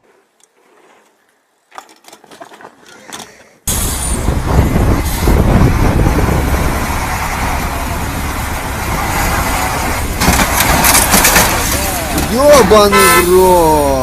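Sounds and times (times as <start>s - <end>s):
vehicle engine rumbling: 3.7s - 14.0s.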